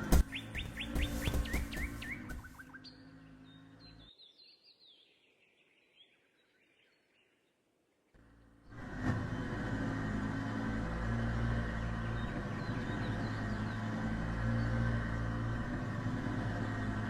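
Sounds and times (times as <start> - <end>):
faint falling chirps: 0.0 - 3.8.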